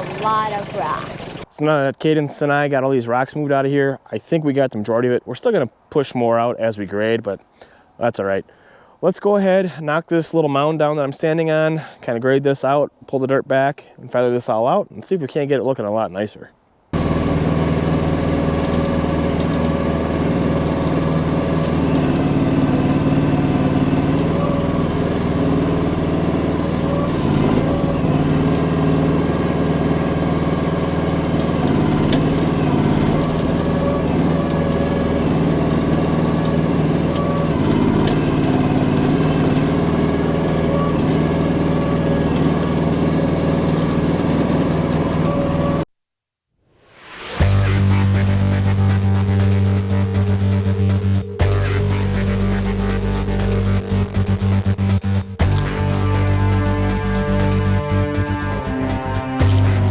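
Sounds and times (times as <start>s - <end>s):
excavator engine running: 0.0s - 1.5s, 17.0s - 45.8s, 47.5s - 59.9s.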